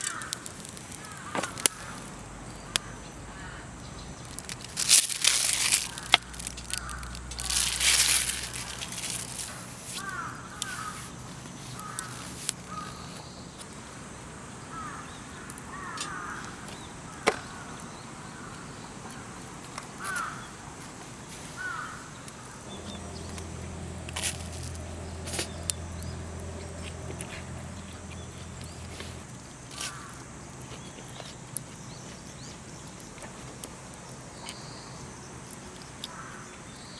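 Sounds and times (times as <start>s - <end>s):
crows cawing: 0.0s - 2.1s, 2.7s - 3.8s, 4.4s - 13.3s, 14.7s - 19.4s, 20.0s - 20.6s, 21.5s - 22.8s, 29.8s - 30.3s, 36.1s - 36.5s
rustle: 0.0s - 36.9s.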